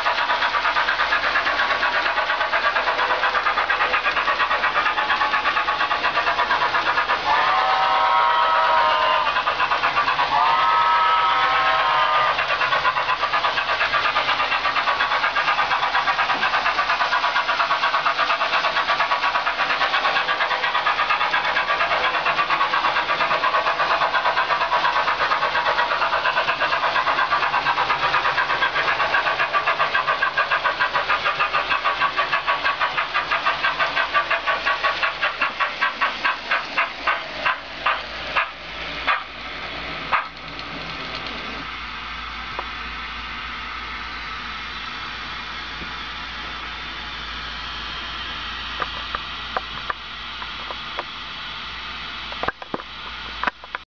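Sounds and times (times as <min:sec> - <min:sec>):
model locomotive steam chuffing: 0:00.0 - 0:53.8
chime steam whistle: 0:07.3 - 0:09.3, 0:10.3 - 0:12.3.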